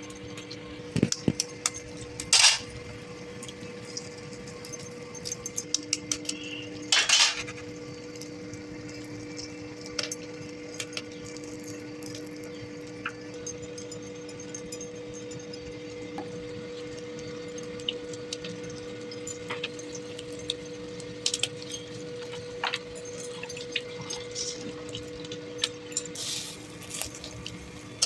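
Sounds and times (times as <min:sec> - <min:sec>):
kitchen utensils clicking and tapping: 0:00.9 - 0:02.8, 0:04.7 - 0:07.6.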